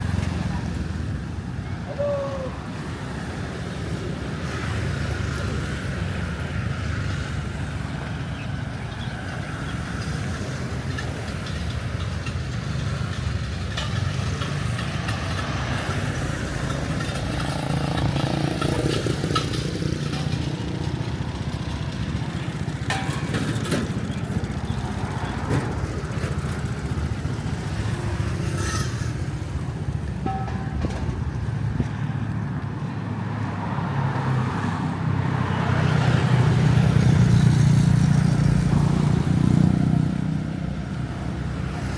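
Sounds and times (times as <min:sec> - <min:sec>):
vehicle engines rumbling: 0:00.0 - 0:41.9
faint voices: 0:00.2 - 0:02.9.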